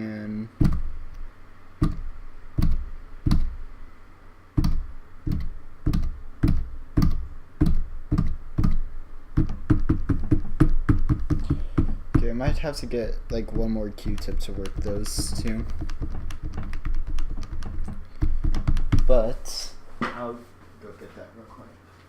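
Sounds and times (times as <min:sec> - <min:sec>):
keyboard keys clicking: 0:04.6 - 0:08.8, 0:13.3 - 0:19.1.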